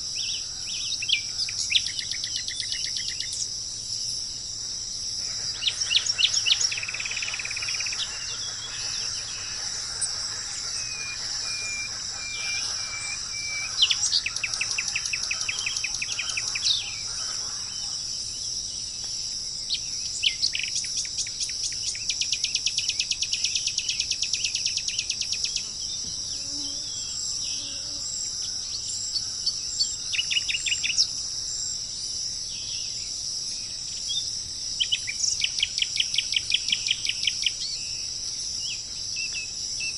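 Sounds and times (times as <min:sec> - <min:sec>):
songbirds chirping and trilling: 0:00.0 - 0:39.9
high-pitched insect drone: 0:02.1 - 0:18.4.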